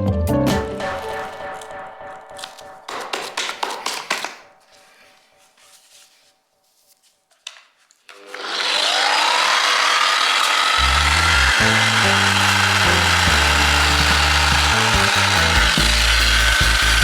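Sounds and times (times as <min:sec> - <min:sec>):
sander motor whining: 0:08.1 - 0:17.0.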